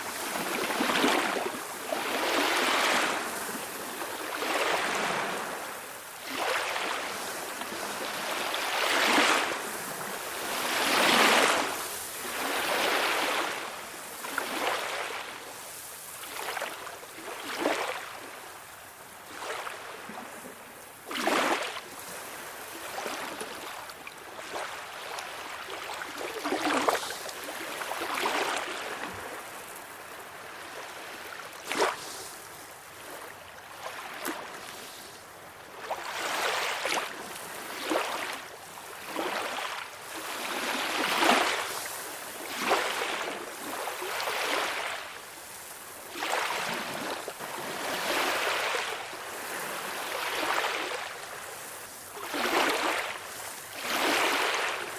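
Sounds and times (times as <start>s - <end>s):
small waves washing in: 0.0s - 54.9s.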